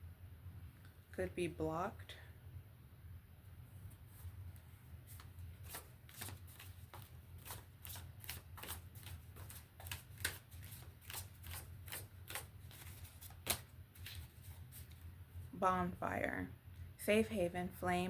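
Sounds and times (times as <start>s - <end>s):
cards being shuffled: 3.9s - 15.0s.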